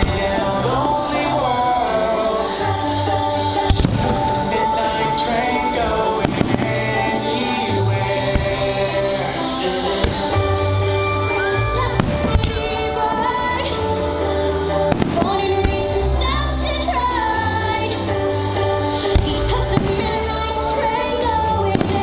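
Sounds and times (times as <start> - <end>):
music with woman singing: 0.0 - 22.0
firework cracks: 3.6 - 4.5, 6.2 - 7.7.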